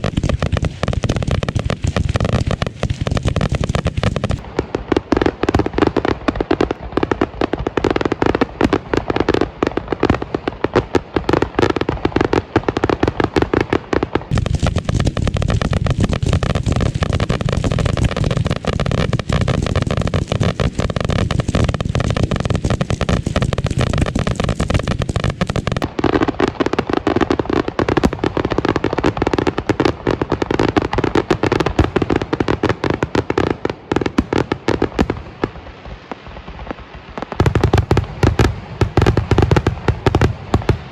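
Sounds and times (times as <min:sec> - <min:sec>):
firework shells bursting: 0:37.4 - 0:40.9.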